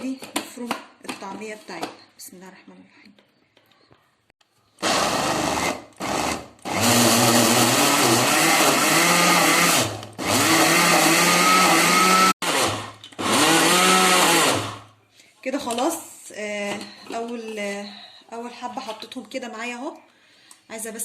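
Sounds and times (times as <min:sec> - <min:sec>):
food processor grinding: 0:04.8 - 0:14.9.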